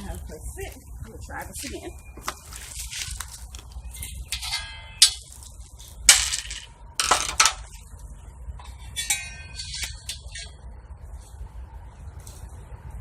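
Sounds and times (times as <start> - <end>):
ringing metal strike: 4.3 - 5.4, 8.6 - 10.6
metallic clanks and clinks: 4.3 - 5.5, 8.6 - 10.6.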